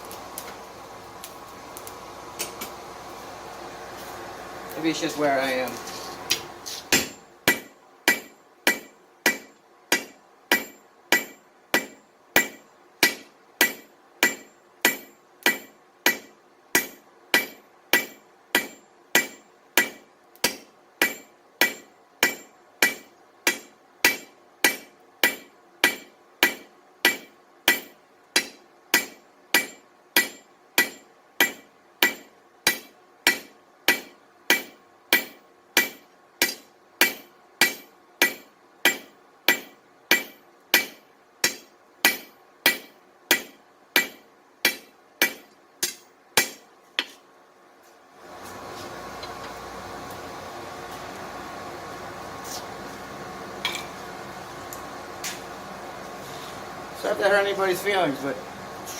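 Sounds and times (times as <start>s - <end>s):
hammer striking steel on anvil: 6.3s - 47.2s, 53.6s - 54.0s.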